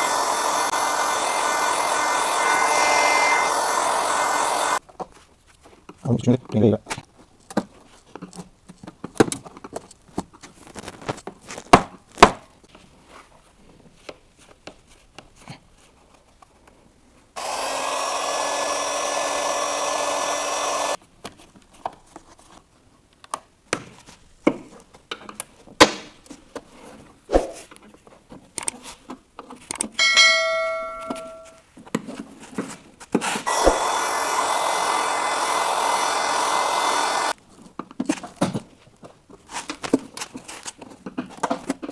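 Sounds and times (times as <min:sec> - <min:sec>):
handheld electric tool whining: 0:00.0 - 0:04.8, 0:17.4 - 0:21.0, 0:30.0 - 0:31.6, 0:33.3 - 0:37.4
high pitched squeak: 0:30.0 - 0:31.6.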